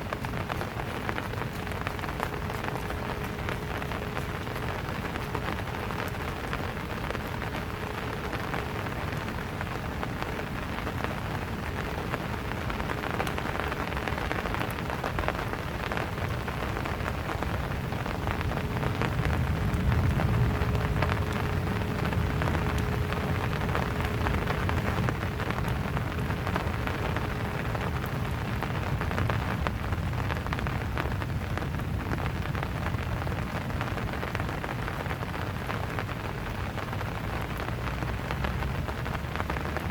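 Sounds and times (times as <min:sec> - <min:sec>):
rain falling: 0:00.0 - 0:39.9
raindrops ticking close by: 0:00.0 - 0:39.9
low rumble: 0:17.1 - 0:34.4.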